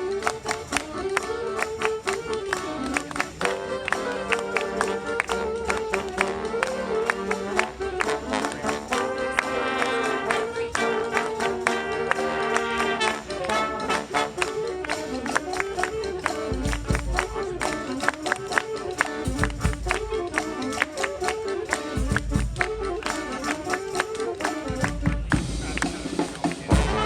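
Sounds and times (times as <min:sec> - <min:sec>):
brass horns playing: 0:00.0 - 0:27.0
drum strikes: 0:24.7 - 0:27.0.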